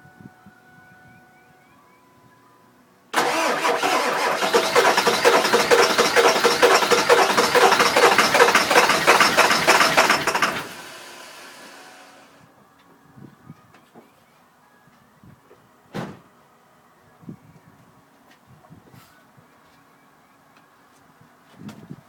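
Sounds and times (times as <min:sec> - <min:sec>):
starter motor cranking: 0:03.2 - 0:12.2.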